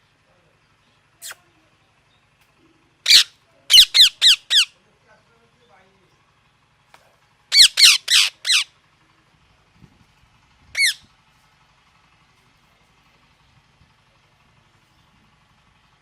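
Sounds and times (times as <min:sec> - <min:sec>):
parrot squawking: 0:01.2 - 0:01.4, 0:03.0 - 0:04.8, 0:07.5 - 0:08.7, 0:10.7 - 0:11.0.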